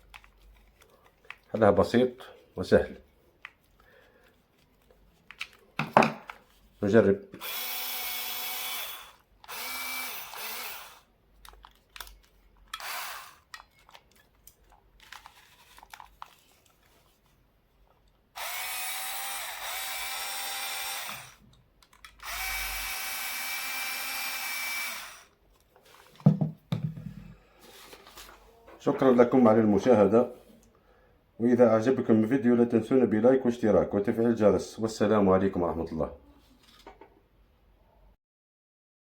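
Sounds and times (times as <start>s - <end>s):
cordless drill motor whining: 7.4s - 11.1s, 12.8s - 13.5s, 18.4s - 21.4s, 22.2s - 25.4s.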